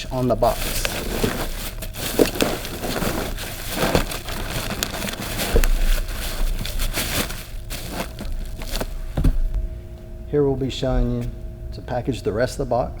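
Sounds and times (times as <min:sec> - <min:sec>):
bubble wrap crinkling: 0:00.0 - 0:09.5.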